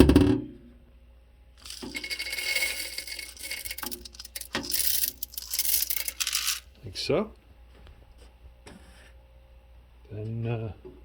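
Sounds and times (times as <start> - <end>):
coffee beans rattling into hopper: 1.6 - 6.7.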